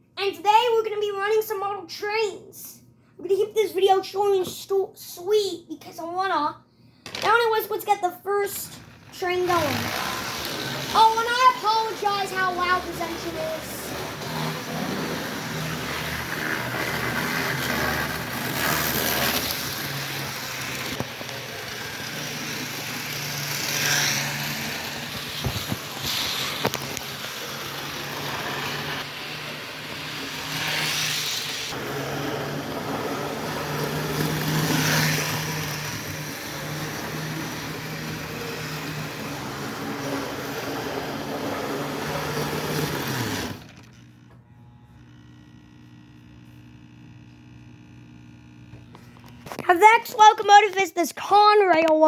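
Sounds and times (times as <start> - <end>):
wheels rolling on track: 8.5 - 44.0
model train motor humming: 8.5 - 44.1.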